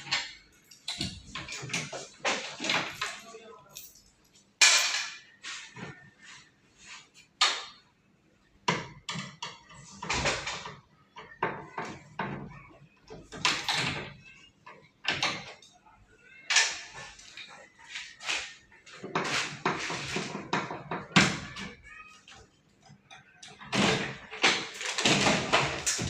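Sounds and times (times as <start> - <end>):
hard objects knocking and clattering: 16.5 - 26.0.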